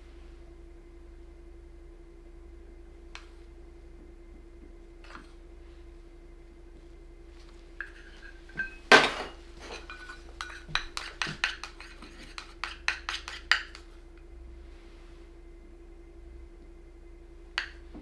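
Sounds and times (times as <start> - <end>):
utensils clinking against dishes: 7.8 - 13.8.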